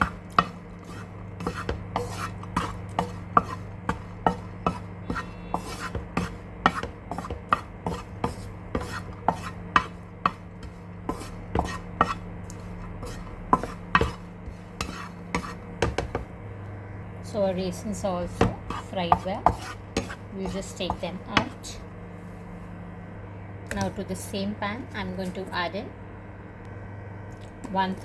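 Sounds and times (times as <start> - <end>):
spatula scraping in a pan: 0.0 - 16.3, 17.9 - 21.8.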